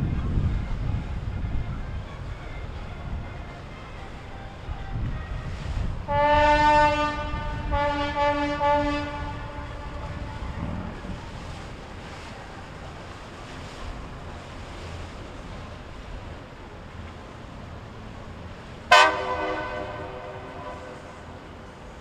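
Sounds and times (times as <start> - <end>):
engine rumble: 0.0 - 22.0
water: 0.0 - 22.0
boat horn blast: 3.0 - 11.7, 18.9 - 21.7.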